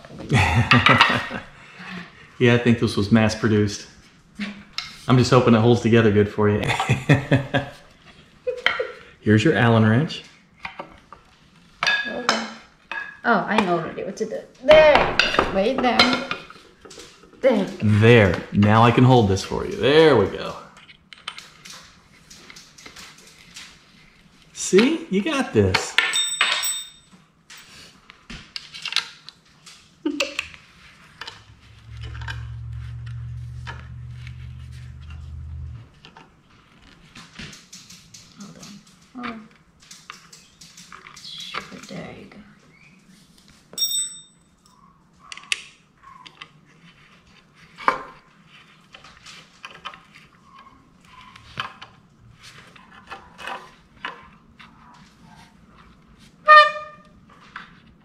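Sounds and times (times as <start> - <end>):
metal hardware clinking: 25.8 - 27.7, 43.8 - 44.8
steady low hum: 31.0 - 36.1.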